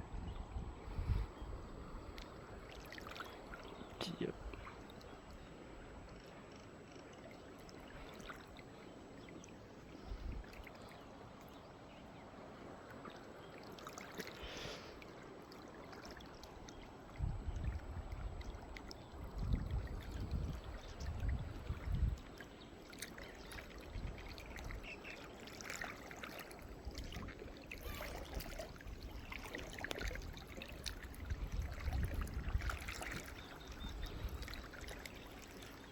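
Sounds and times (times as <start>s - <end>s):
wind rumble on microphone: 0.0s - 2.7s, 10.0s - 10.5s, 17.1s - 22.4s, 23.8s - 24.8s, 26.9s - 35.2s
water trickling: 1.0s - 35.9s.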